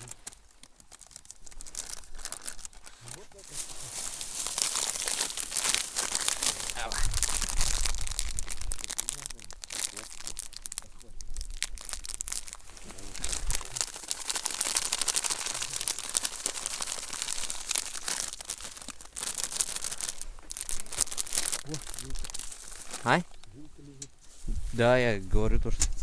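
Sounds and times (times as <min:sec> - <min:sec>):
crackling rustle: 0:00.0 - 0:26.0
wind buffeting microphone: 0:06.8 - 0:08.8, 0:24.4 - 0:26.0.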